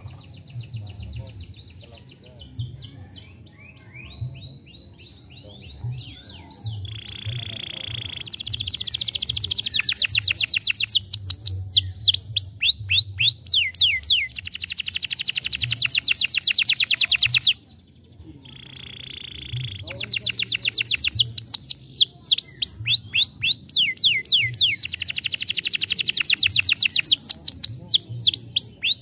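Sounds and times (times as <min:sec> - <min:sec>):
canary singing: 0:00.0 - 0:17.8, 0:18.4 - 0:29.0.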